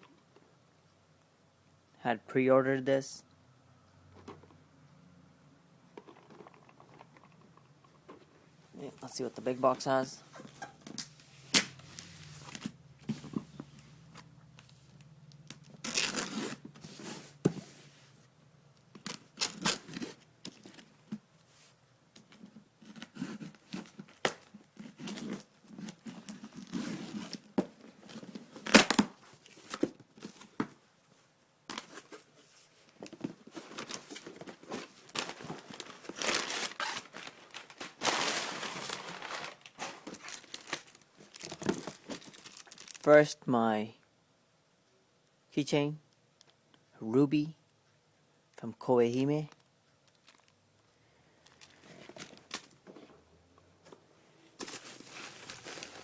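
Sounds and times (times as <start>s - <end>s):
packing material crinkling: 15.5s - 17.2s, 19.0s - 21.0s, 32.8s - 43.1s, 49.6s - 50.6s, 51.4s - 52.9s, 54.6s - 56.0s
tape tearing: 15.5s - 17.2s, 19.0s - 20.8s, 28.6s - 30.5s, 33.6s - 43.1s, 54.6s - 56.0s.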